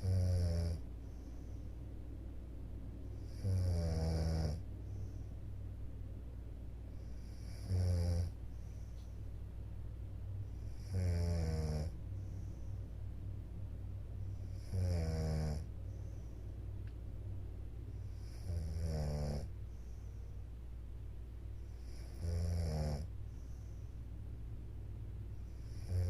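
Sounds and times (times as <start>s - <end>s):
woman snoring: 0.0s - 0.8s, 3.2s - 4.6s, 7.1s - 8.4s, 10.6s - 12.0s, 14.5s - 15.7s, 18.1s - 19.5s, 21.8s - 23.1s, 25.6s - 26.0s
steady low hum: 0.0s - 26.0s.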